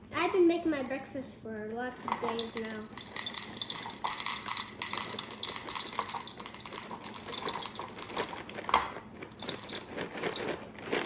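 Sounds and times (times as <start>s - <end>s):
cereal pouring into bowl: 2.3s - 11.0s.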